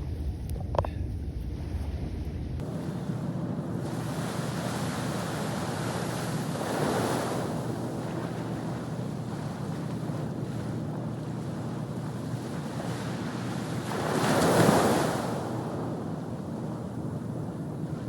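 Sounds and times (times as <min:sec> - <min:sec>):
wind buffeting microphone: 0:00.0 - 0:18.0
ocean surf washing: 0:02.6 - 0:18.0.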